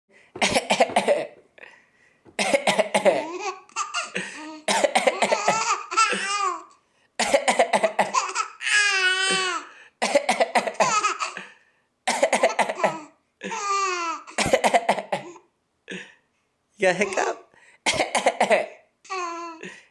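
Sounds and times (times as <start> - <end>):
adult coughing: 0.4 - 1.4, 2.4 - 3.4, 4.0 - 6.5, 7.2 - 8.4, 9.2 - 13.6, 14.3 - 16.2, 17.9 - 18.8
small child giggling: 3.1 - 6.6, 8.1 - 9.7.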